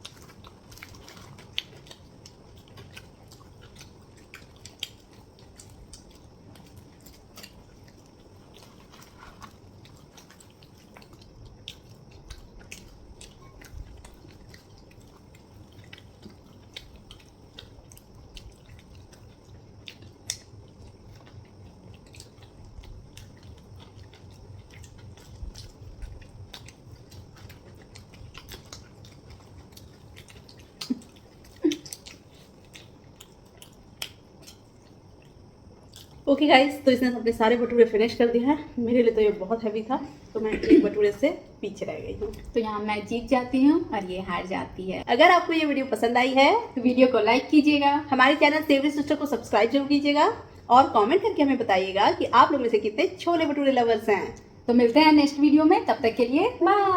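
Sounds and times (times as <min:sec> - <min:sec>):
wet mouth clicks: 0:00.0 - 0:36.2
people chewing food: 0:00.0 - 0:56.9.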